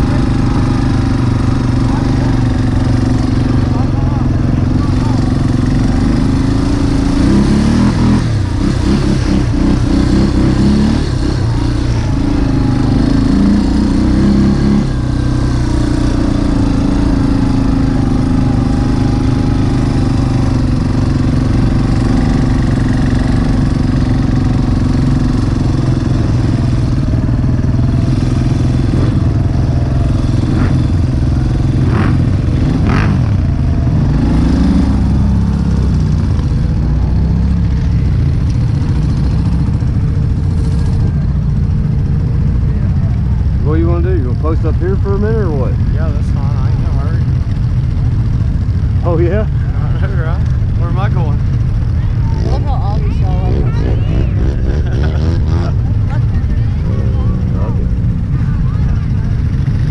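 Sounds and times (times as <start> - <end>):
atv engine running: 0.0 - 59.9.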